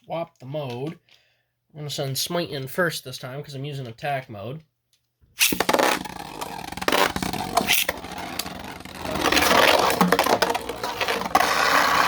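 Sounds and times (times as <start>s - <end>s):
spinning tops clashing: 5.4s - 11.3s
spinning tops launched: 5.4s - 12.0s
spinning tops whirring and scraping: 5.4s - 12.0s.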